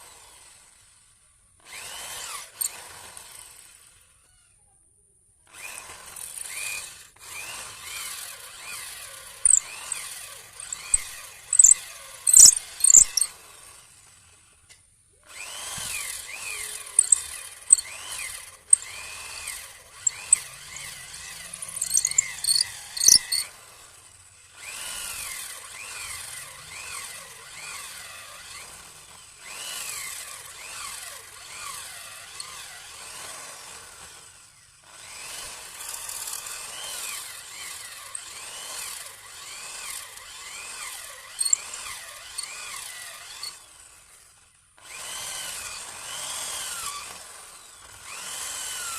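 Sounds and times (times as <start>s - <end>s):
electric drill boring into wood: 6.3s - 13.3s, 15.4s - 20.7s, 21.8s - 23.5s, 34.8s - 44.2s, 44.8s - 48.9s
sharp clicks and snaps: 10.6s - 13.3s, 17.0s - 17.8s, 21.8s - 23.4s.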